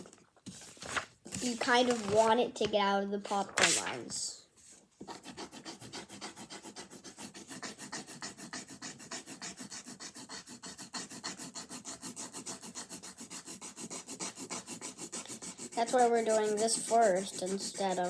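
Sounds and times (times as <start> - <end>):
pencil scribbling on paper: 5.0 - 18.0.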